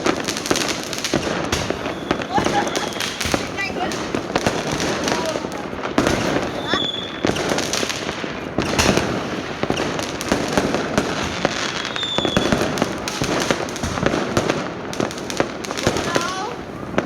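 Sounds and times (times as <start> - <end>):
firework whistle: 0.0 - 13.6
fireworks cracking and banging: 0.0 - 17.0.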